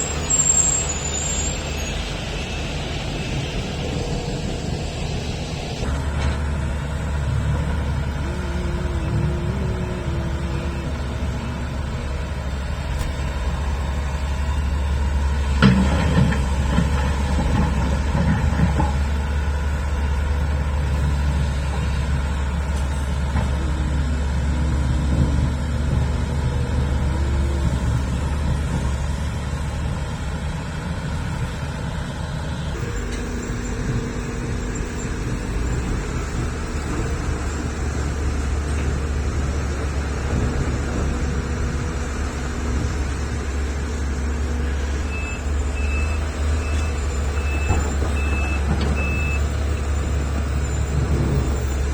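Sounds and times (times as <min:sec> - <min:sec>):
truck reversing alarm beeping: 0:00.0 - 0:16.3, 0:32.7 - 0:51.9
heavy diesel engines running: 0:00.0 - 0:51.9.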